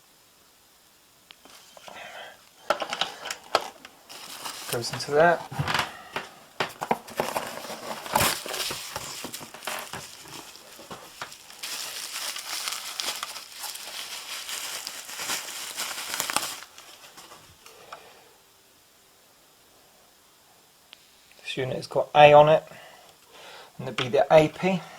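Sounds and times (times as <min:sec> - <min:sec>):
packaging crinkling: 0:02.6 - 0:17.7.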